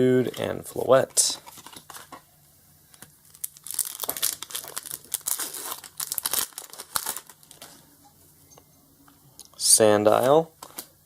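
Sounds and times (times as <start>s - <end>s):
foil wrapper crinkling and tearing: 1.1s - 2.2s, 2.9s - 7.8s.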